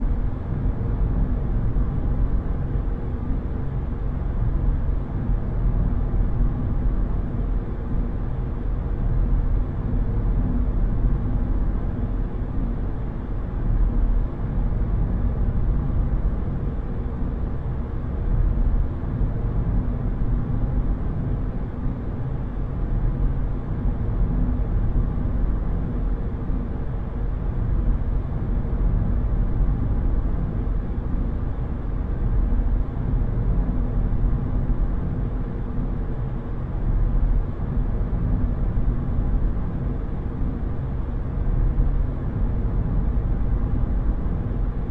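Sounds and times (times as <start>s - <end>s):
car driving rumble inside cabin: 0.0s - 44.9s.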